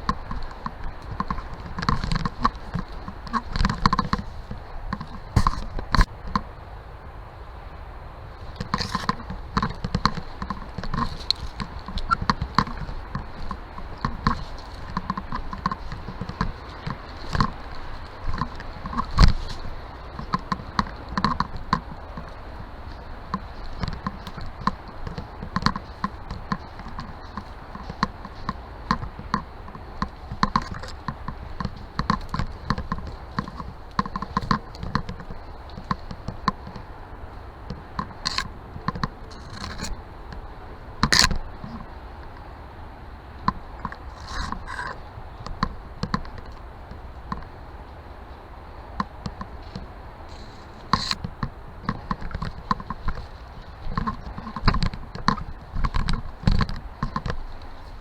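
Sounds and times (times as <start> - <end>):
taps and knocks: 0.0 - 6.4, 8.6 - 36.9, 49.0 - 57.6
rustling: 0.0 - 6.5, 8.3 - 42.5, 43.4 - 48.0, 48.8 - 58.0.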